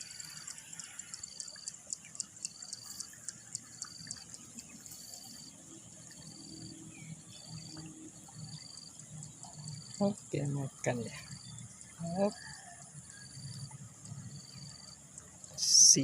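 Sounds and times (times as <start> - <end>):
crickets trilling: 0.0 - 16.0.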